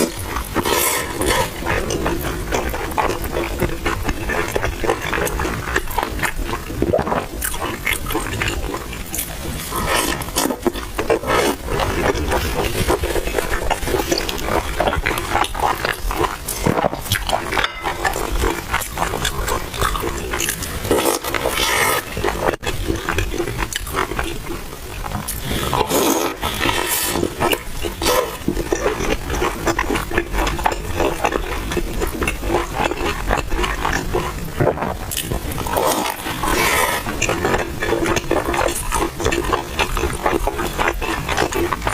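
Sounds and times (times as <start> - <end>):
person chewing crispy food: 0.0 - 41.9.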